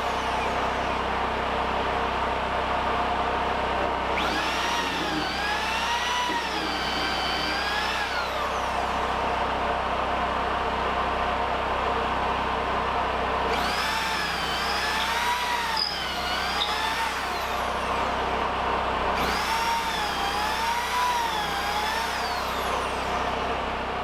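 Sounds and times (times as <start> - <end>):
power tool humming: 0.0 - 2.4, 3.8 - 9.8, 13.4 - 24.0
wavering whine: 0.0 - 2.9.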